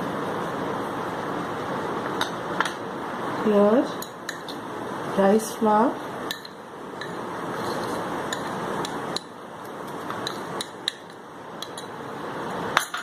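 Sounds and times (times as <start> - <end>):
spoon clinking against metal bowls: 6.3 - 7.2, 8.3 - 9.3, 10.1 - 12.0, 12.8 - 13.0.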